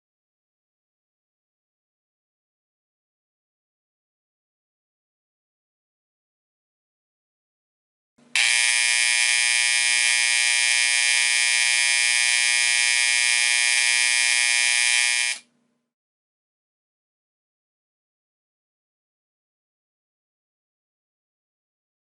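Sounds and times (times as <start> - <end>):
fire alarm buzzer: 8.4 - 15.5.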